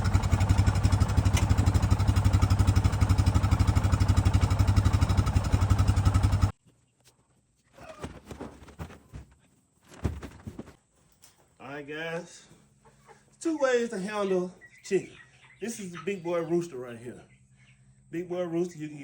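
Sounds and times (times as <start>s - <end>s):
small engine running: 0.0s - 6.5s.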